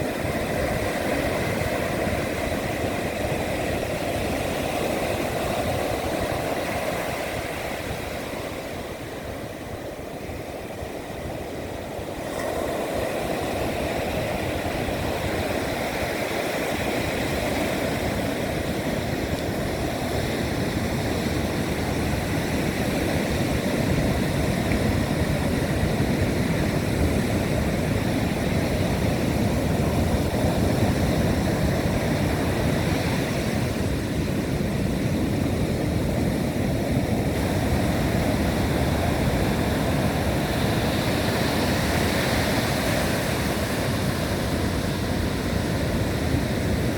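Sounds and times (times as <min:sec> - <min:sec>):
strong wind blowing: 0:00.0 - 0:46.9
waves breaking in heavy surf: 0:00.0 - 0:46.9.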